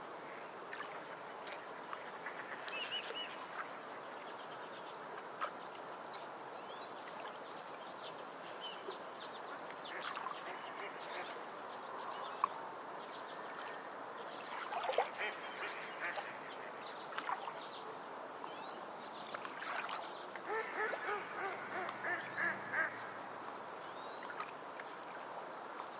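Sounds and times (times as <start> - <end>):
birds calling: 20.4 - 23.1.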